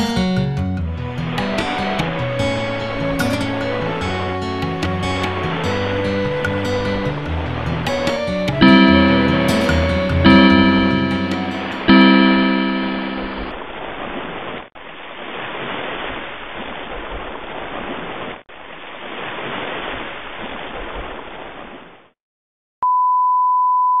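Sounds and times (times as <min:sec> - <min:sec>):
ocean surf washing in and out: 0:01.1 - 0:22.0
steady pure tone: 0:08.5 - 0:13.5.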